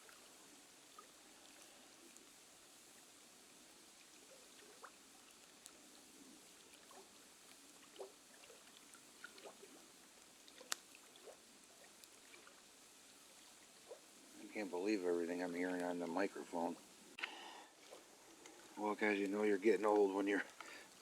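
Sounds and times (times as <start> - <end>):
faint background hiss: 0.0 - 21.0
soft pops and clicks: 10.5 - 12.6, 19.9 - 20.9.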